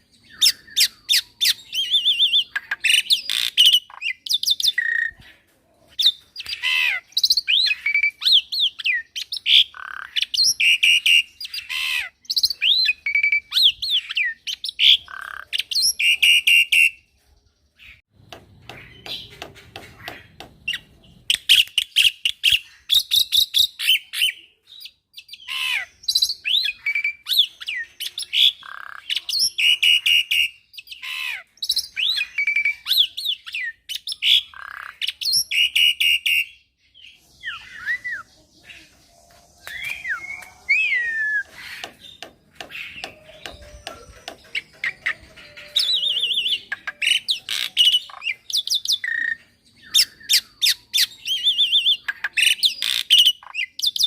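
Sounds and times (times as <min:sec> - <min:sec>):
starling singing: 0:06.0 - 0:17.1, 0:25.2 - 0:54.0.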